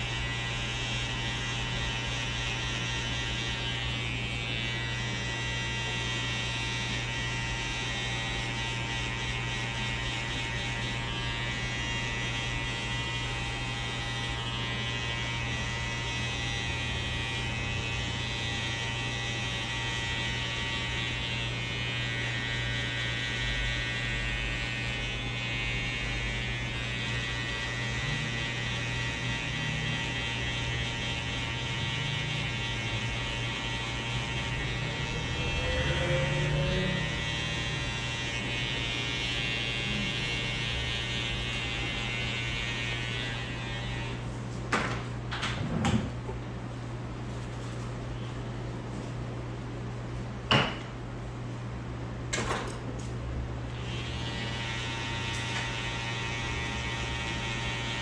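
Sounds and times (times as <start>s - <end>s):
electric hair clippers buzzing: 0.0s - 45.1s, 53.7s - 58.0s.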